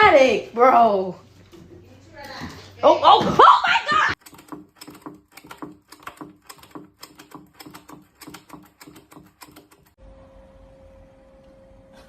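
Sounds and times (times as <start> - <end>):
rapid even tapping: 3.9 - 10.0.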